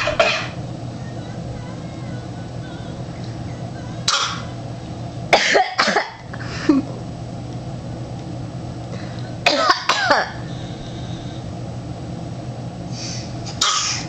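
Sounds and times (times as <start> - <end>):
person coughing: 0.0 - 0.6, 4.1 - 4.5, 5.4 - 6.9, 9.4 - 10.4, 13.6 - 14.0.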